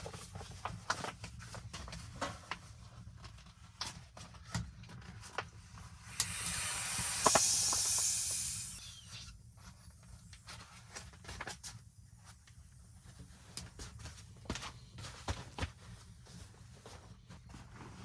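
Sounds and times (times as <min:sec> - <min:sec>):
hiss: 0:06.0 - 0:11.6.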